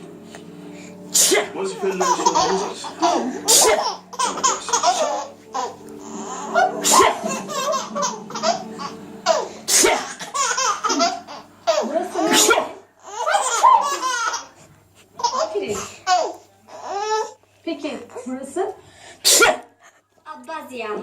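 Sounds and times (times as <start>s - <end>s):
baby laughing: 1.2s - 14.6s, 15.2s - 17.4s.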